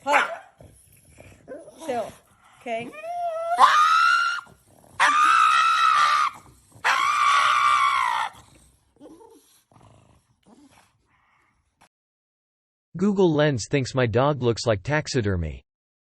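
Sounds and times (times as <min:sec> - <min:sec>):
dog high-pitched wails: 0:02.8 - 0:08.4.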